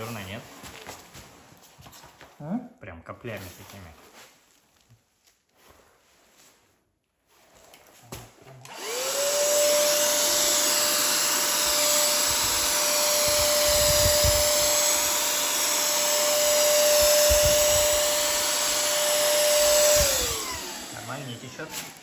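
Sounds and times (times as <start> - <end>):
paint sprayer turbine whining: 8.6 - 22.0.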